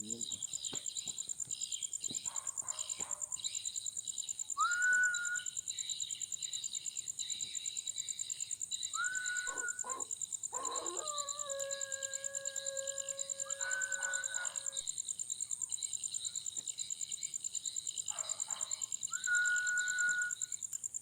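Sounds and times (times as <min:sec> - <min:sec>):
night insects chirring: 0:00.0 - 0:21.0
person whistling: 0:04.6 - 0:05.5, 0:09.0 - 0:09.8, 0:19.2 - 0:20.5
held chord of steady tones: 0:09.0 - 0:14.9.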